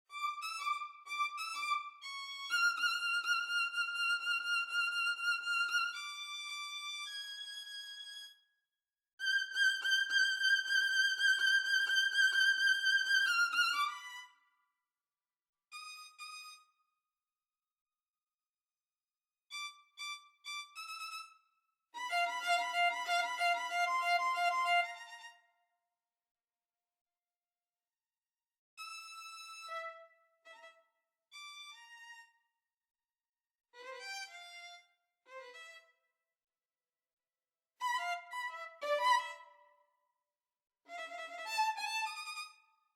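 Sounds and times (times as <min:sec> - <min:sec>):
synthesized solo violin: 0:37.8 - 0:39.5.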